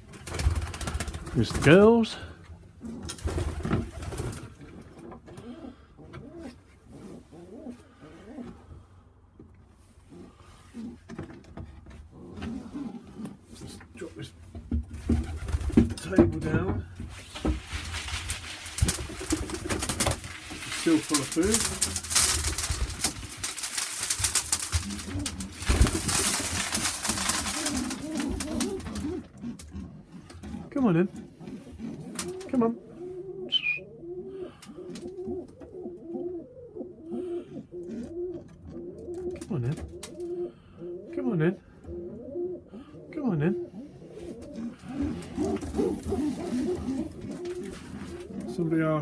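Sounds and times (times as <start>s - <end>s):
pigeons cooing: 0.4s - 8.7s, 10.0s - 11.2s, 12.1s - 14.2s, 18.4s - 49.0s
rustling: 17.0s - 32.6s, 43.8s - 49.0s.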